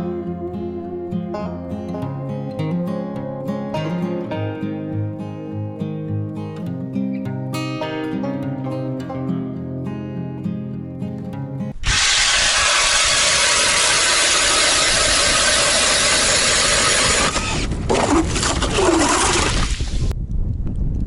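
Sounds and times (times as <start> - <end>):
acoustic guitar music: 0.0 - 11.8
ice auger drilling: 11.8 - 20.0.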